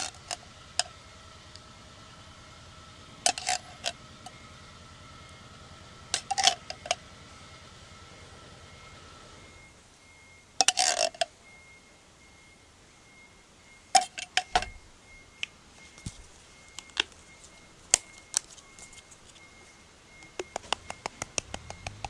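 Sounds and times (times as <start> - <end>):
utensils clinking on metal: 3.3 - 3.9
utensils scraping mess tin: 3.3 - 3.9.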